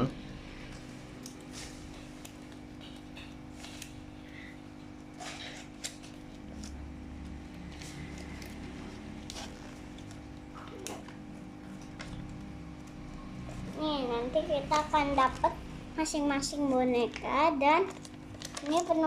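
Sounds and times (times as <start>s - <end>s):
steady low hum: 0.0s - 19.0s
packaging and paper rustling: 16.6s - 19.0s.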